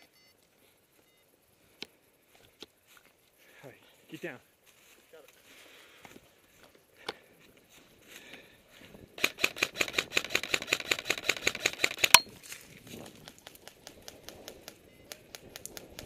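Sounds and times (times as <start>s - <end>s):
airsoft gun firing full-auto: 9.2s - 12.2s
faint scattered clicks: 9.2s - 16.0s.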